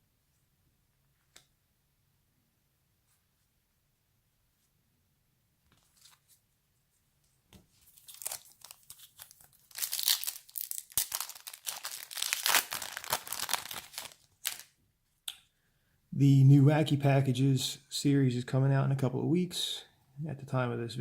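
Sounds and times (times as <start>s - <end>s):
wrapper tearing and crinkling: 7.8s - 14.7s.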